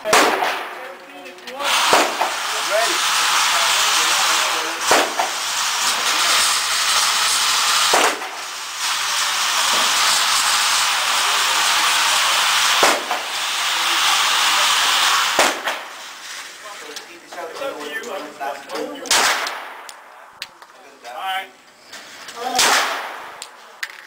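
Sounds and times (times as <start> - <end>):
pistol shots: 0.0 - 0.8, 1.8 - 2.4, 4.8 - 5.4, 7.8 - 8.4, 12.8 - 13.3, 15.4 - 15.9, 19.1 - 20.0, 22.5 - 23.6
loud steady hiss: 0.0 - 17.7.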